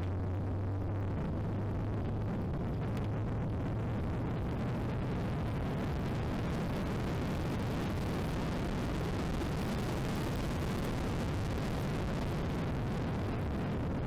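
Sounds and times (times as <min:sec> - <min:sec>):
car engine running at speed: 0:00.0 - 0:14.0.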